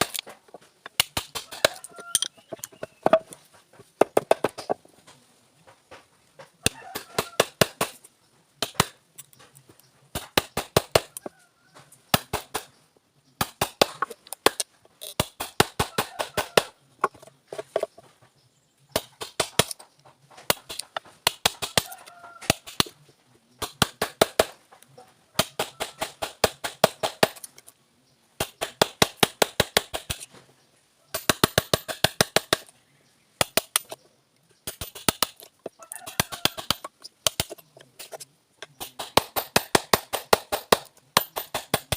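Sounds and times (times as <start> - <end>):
hammer striking wood chisel: 38.8 - 41.9.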